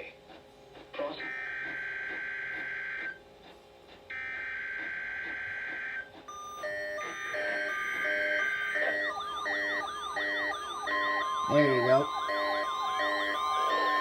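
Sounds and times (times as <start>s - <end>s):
digital data bursts: 6.6s - 14.0s
alert device short beeps: 6.8s - 14.0s.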